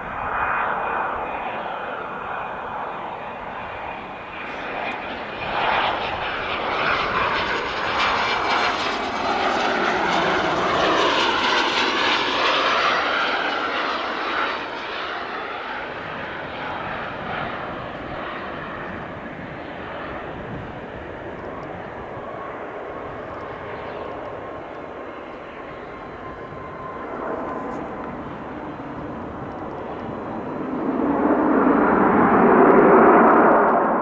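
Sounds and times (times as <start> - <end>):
jet passing overhead: 0.0 - 34.0.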